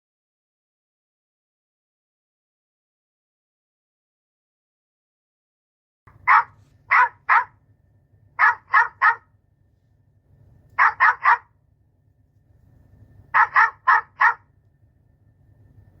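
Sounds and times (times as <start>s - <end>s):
dog barking: 6.1s - 7.6s, 8.4s - 9.3s, 10.8s - 11.6s, 13.3s - 14.5s.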